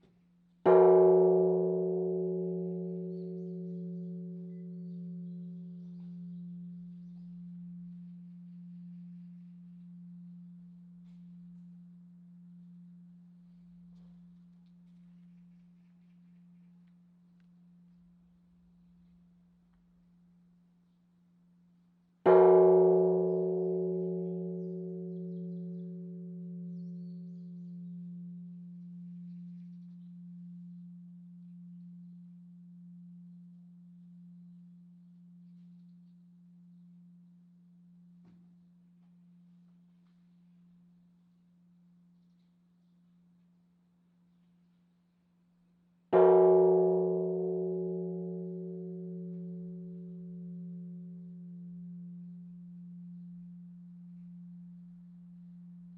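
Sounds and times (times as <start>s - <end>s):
large bronze bell humming: 0.6s - 15.2s, 22.2s - 42.2s, 46.0s - 55.9s.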